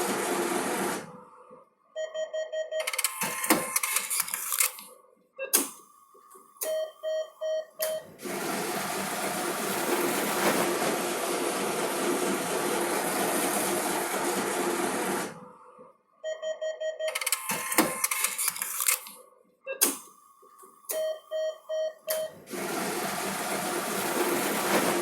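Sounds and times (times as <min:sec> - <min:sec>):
cash dispenser whirring: 0:00.0 - 0:01.1, 0:02.9 - 0:04.8, 0:07.9 - 0:15.4, 0:17.1 - 0:19.1, 0:22.2 - 0:25.0
keypad beeps: 0:02.0 - 0:04.8, 0:06.6 - 0:08.1, 0:16.3 - 0:19.0, 0:20.9 - 0:22.4.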